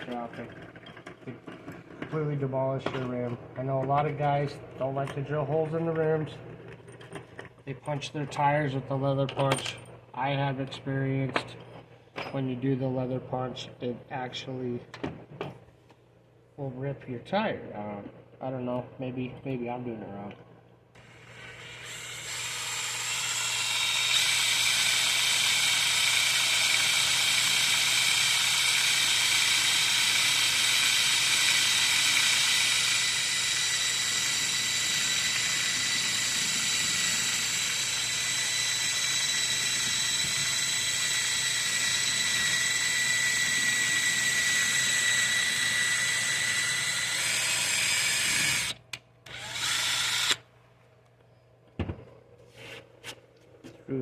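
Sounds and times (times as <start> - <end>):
power drill whining: 21.0 - 50.5.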